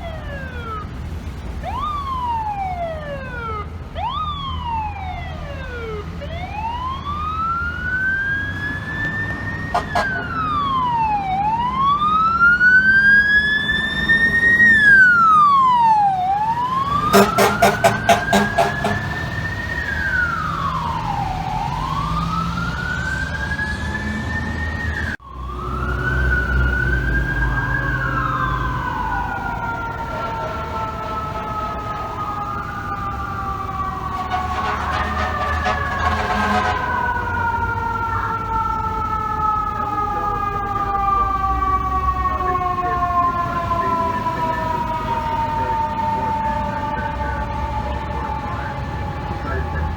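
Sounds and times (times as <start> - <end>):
fire truck siren wailing: 0.0 - 49.9
truck engine rumble: 0.0 - 49.9
short air horn blasts: 9.8 - 10.2, 17.1 - 19.3, 34.1 - 37.3.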